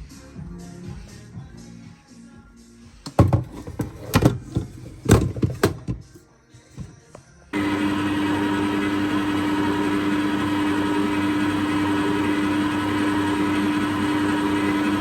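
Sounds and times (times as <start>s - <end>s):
kitchen mixer motor humming: 7.6s - 15.0s.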